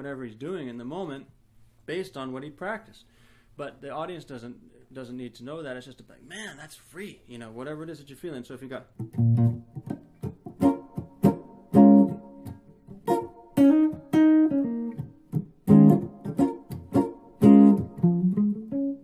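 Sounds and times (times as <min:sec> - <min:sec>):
jazz guitar playing: 0:09.0 - 0:19.0.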